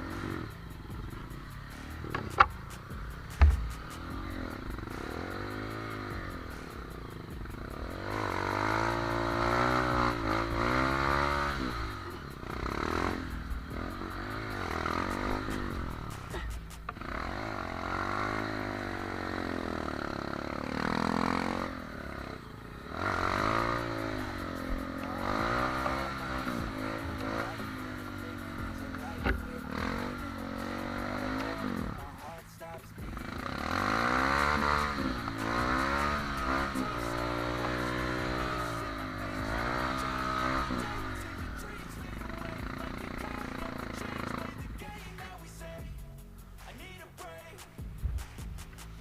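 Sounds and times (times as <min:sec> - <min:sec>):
motorcycle engines revving: 0:00.0 - 0:49.0.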